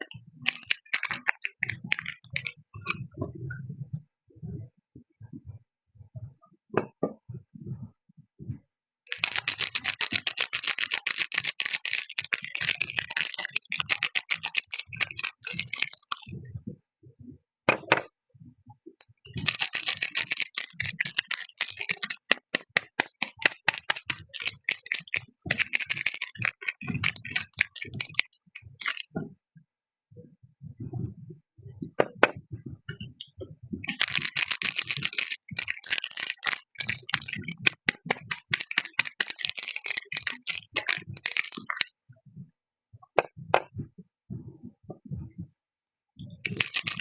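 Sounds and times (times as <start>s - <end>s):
wrapper crinkling: 0.5s - 2.5s, 9.1s - 16.2s, 19.3s - 29.0s, 33.9s - 41.8s, 46.4s - 47.0s.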